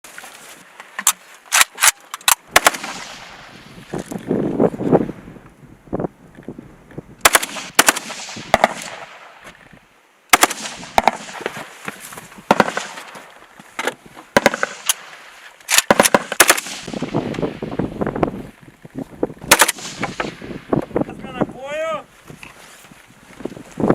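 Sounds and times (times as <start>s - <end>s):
assault rifle firing bursts: 2.5s - 3.5s, 7.2s - 9.2s, 12.5s - 13.0s, 14.4s - 15.0s, 15.7s - 17.2s, 19.5s - 20.4s.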